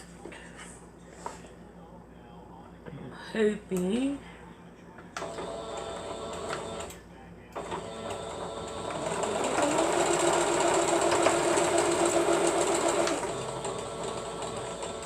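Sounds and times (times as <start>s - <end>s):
sewing machine stitching: 5.2s - 6.9s, 7.6s - 15.0s.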